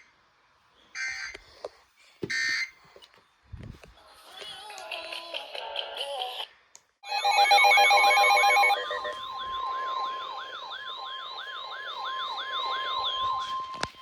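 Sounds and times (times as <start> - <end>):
steady alert tone: 7.0 - 13.8
siren wail: 7.0 - 14.0
pulsing electronic beep: 7.1 - 14.0.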